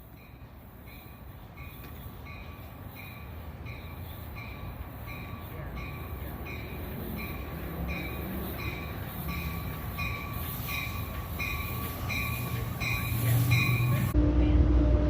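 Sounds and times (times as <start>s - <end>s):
train rumble: 0.0s - 15.0s
bell ringing: 3.7s - 14.2s.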